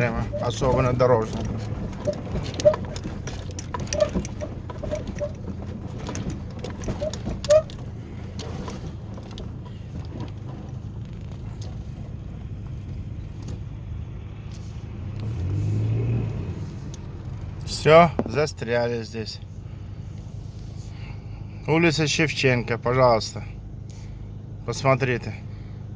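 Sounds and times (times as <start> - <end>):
car knocks and rattles: 0.0 - 14.2, 17.0 - 18.9
car engine running: 0.0 - 25.9.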